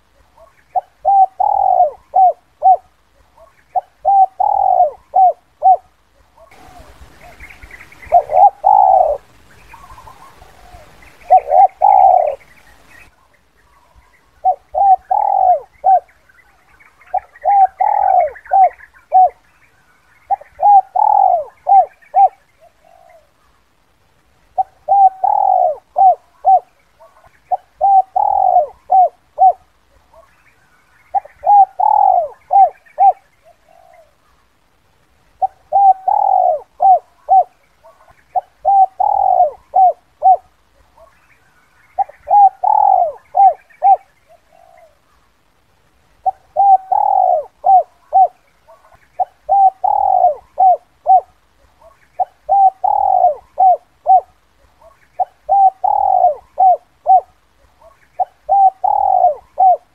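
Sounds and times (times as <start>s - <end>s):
dove cooing: 0.0s - 12.9s, 13.7s - 19.5s, 20.2s - 23.4s, 24.5s - 30.4s, 31.0s - 34.2s, 35.4s - 41.2s, 41.8s - 45.2s, 46.2s - 59.9s.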